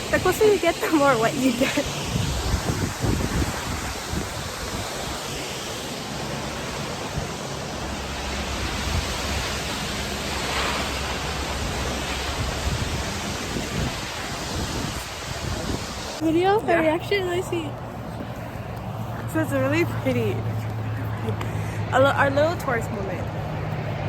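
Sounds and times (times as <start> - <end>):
waterfall rushing: 0.0 - 16.2.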